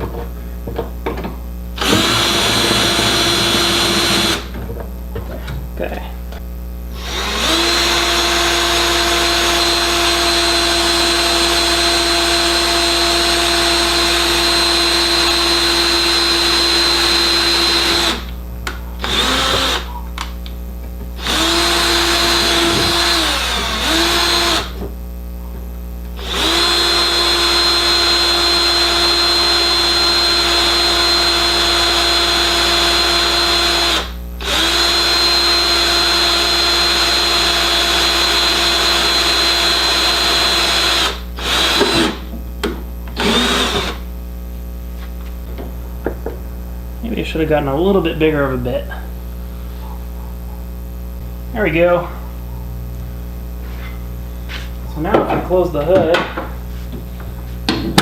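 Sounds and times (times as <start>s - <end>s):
electric drill boring: 1.8s - 4.5s, 6.9s - 18.4s, 19.0s - 19.9s, 21.2s - 24.8s, 26.1s - 42.3s, 43.1s - 44.1s.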